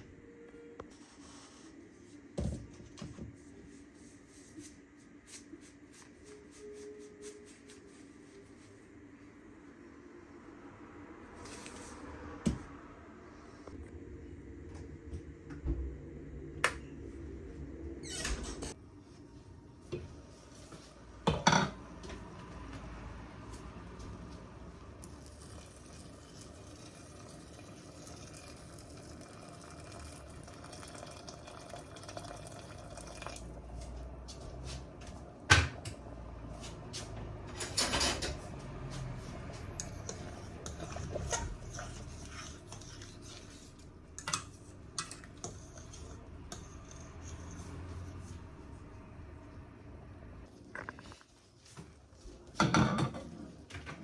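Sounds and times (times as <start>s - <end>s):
pots and utensils clattering: 21.3s - 21.8s, 37.5s - 38.5s, 52.6s - 54.0s.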